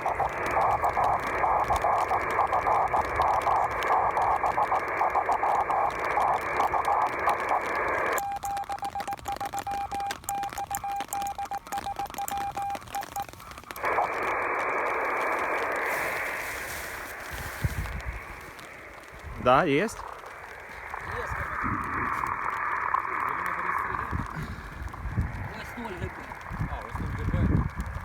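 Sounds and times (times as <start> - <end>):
radio hiss: 0.0 - 8.2, 11.5 - 28.0
morse code tone: 8.0 - 13.3.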